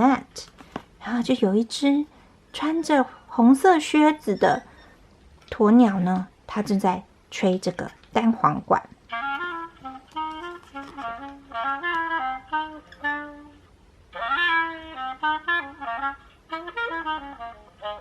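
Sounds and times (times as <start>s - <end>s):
recorded clarinet melody: 9.1s - 18.0s.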